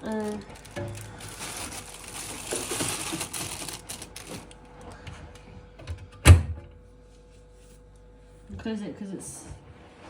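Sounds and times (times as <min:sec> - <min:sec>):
ice cubes clattering: 0:00.0 - 0:04.5
plastic bag rustling: 0:00.0 - 0:04.6.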